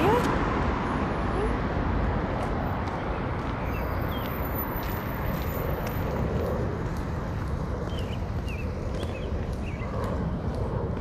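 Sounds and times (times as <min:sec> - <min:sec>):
steady low street rumble: 0:00.0 - 0:11.0
small birds chirping: 0:02.8 - 0:05.0, 0:07.2 - 0:10.4.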